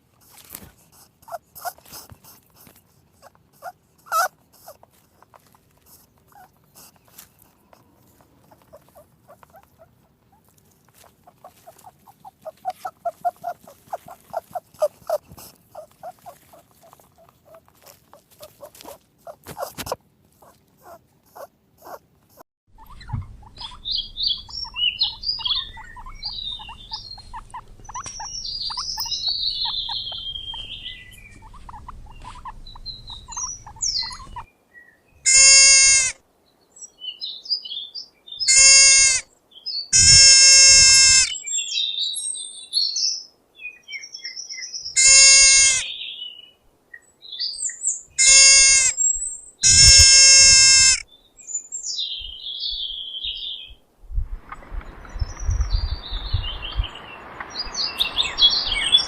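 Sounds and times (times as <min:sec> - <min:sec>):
small birds chirping: 0:00.0 - 0:53.8, 0:54.4 - 0:59.0
low steady hum: 0:22.7 - 0:34.4
loud animal calls: 0:22.7 - 0:34.5, 0:35.2 - 0:36.2, 0:38.5 - 0:39.2, 0:40.0 - 0:41.3, 0:45.0 - 0:45.9, 0:48.2 - 0:49.0, 0:49.6 - 0:51.0.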